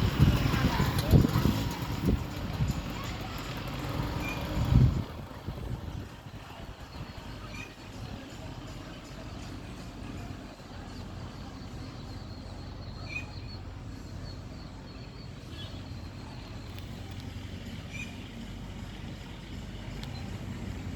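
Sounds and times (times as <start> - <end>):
bird chirps: 11.7 - 18.4.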